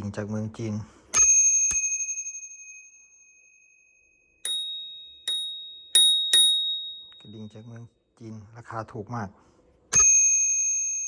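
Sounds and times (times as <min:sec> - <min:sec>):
high-pitched bicycle bell dings: 0:01.1 - 0:07.8, 0:09.9 - 0:11.0
bicycle bell ringing: 0:01.2 - 0:07.7, 0:09.9 - 0:11.0.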